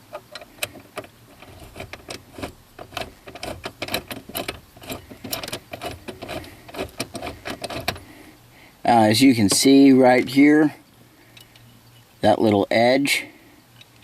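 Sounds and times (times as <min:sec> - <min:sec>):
socket ratchet clicking: 0:00.1 - 0:08.0.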